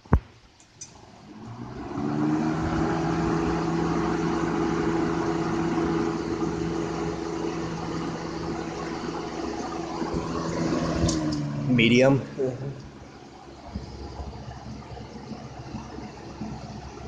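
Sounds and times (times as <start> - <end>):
box fan motor hum: 0.0 - 17.0
rush of air from fan: 0.9 - 17.0.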